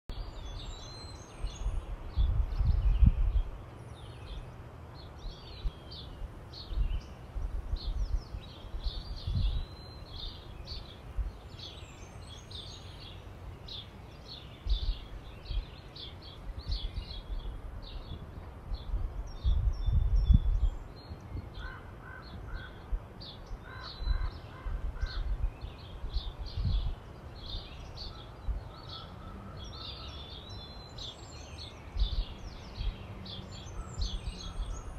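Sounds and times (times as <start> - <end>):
small birds chirping and singing: 0.1 - 34.9.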